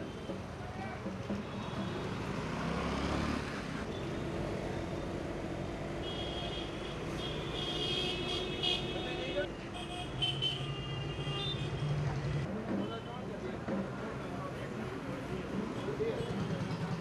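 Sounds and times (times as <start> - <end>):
street traffic: 0.0 - 17.0
vehicle passing: 2.1 - 3.9.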